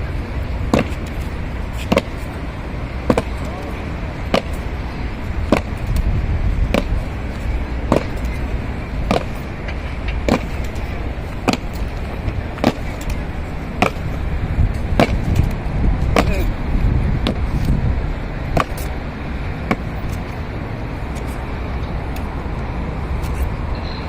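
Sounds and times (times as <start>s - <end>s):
steady low rumble: 0.0s - 24.0s
boots stomping on pavement: 0.6s - 2.4s, 3.0s - 3.6s, 4.2s - 17.8s, 18.5s - 19.0s, 19.6s - 20.2s.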